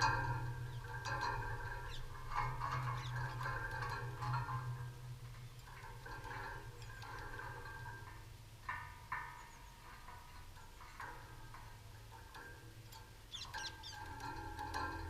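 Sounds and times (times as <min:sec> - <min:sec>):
birds calling: 0:00.0 - 0:04.2, 0:13.2 - 0:14.8
low steady hum: 0:00.0 - 0:15.0.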